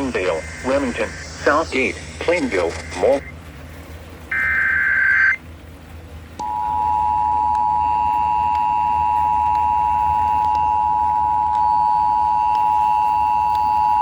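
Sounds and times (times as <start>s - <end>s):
digital data tones: 4.3s - 5.4s
steady two-tone attention signal: 4.3s - 5.4s, 6.4s - 14.0s.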